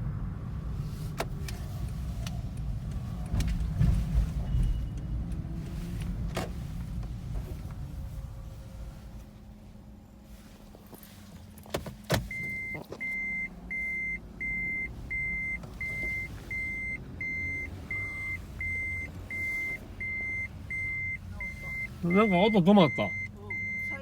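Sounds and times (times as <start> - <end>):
car sharp clicks: 1.1 - 3.8, 11.6 - 13.4
car warning buzzer beeping: 12.2 - 24.0.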